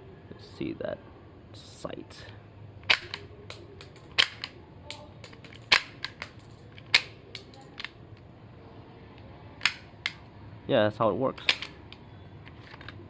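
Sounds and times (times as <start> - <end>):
toy blaster snaps: 2.8 - 8.0, 9.6 - 10.2.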